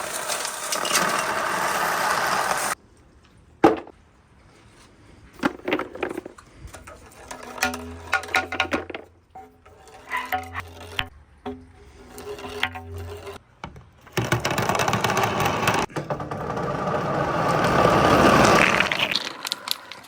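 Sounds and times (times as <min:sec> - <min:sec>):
marbles rattling down wooden run: 0:00.0 - 0:02.8, 0:14.1 - 0:20.0.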